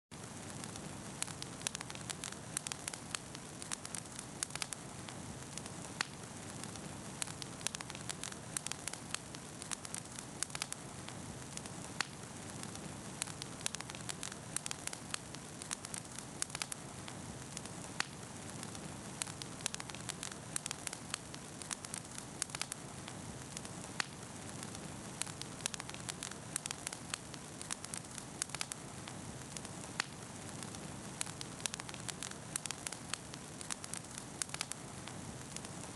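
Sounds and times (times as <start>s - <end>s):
campfire crackling and hissing: 0.1s - 35.9s.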